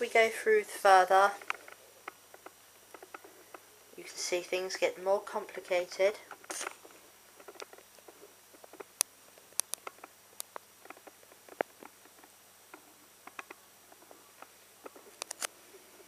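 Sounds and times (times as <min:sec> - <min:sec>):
paper pages rustling: 0:06.4 - 0:08.9.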